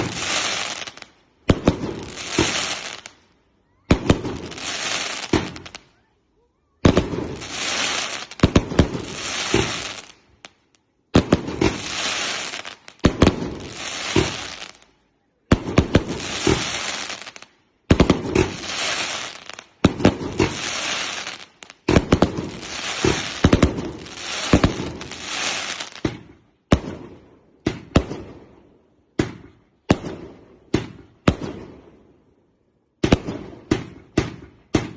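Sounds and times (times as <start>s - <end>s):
fireworks bangs: 0.0s - 5.9s, 6.8s - 14.8s, 15.5s - 32.0s, 33.0s - 34.9s
fireworks crackling: 0.0s - 6.0s, 6.8s - 28.3s.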